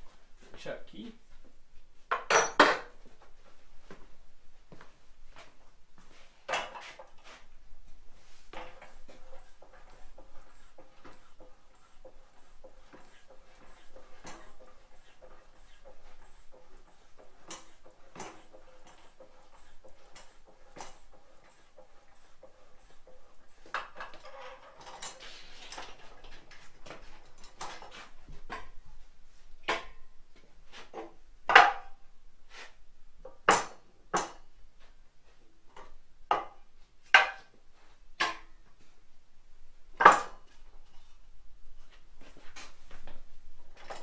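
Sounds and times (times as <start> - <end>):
metal clanks and clinks: 2.1 - 2.9.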